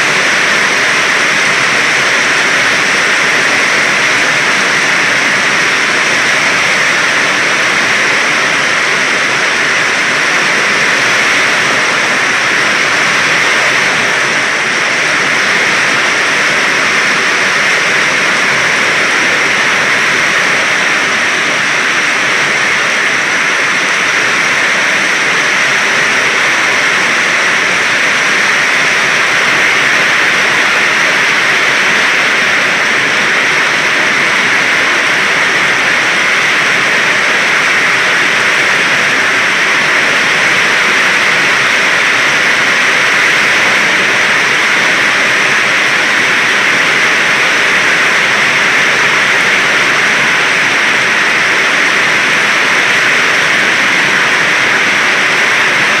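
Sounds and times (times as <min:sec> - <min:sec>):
heavy rain pouring: 0:00.0 - 0:56.0.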